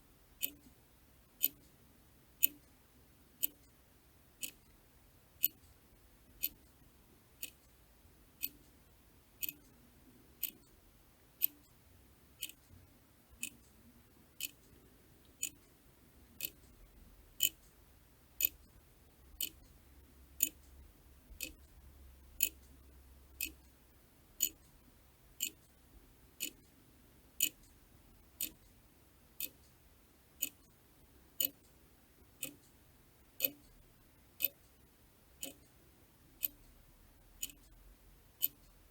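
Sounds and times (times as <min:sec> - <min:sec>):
mechanical clock ticking: 0:00.4 - 0:00.6, 0:01.4 - 0:01.7, 0:02.4 - 0:02.7, 0:03.4 - 0:03.7, 0:04.4 - 0:04.7, 0:05.4 - 0:05.7, 0:06.3 - 0:06.7, 0:07.4 - 0:07.7, 0:08.4 - 0:08.7, 0:09.4 - 0:09.8, 0:10.4 - 0:10.7, 0:11.4 - 0:11.7, 0:12.4 - 0:12.8, 0:13.4 - 0:13.8, 0:14.4 - 0:14.7, 0:15.4 - 0:15.7, 0:16.4 - 0:16.8, 0:17.4 - 0:17.8, 0:18.4 - 0:18.8, 0:19.4 - 0:19.8, 0:20.4 - 0:21.7, 0:22.4 - 0:22.8, 0:23.4 - 0:23.8, 0:24.4 - 0:24.8, 0:25.4 - 0:25.7, 0:26.4 - 0:26.7, 0:27.4 - 0:27.8, 0:28.4 - 0:28.7, 0:29.4 - 0:29.8, 0:30.4 - 0:30.7, 0:31.4 - 0:31.8, 0:32.4 - 0:32.8, 0:33.4 - 0:33.8, 0:34.4 - 0:34.7, 0:35.4 - 0:35.7, 0:36.4 - 0:36.8, 0:37.4 - 0:37.8, 0:38.4 - 0:38.8.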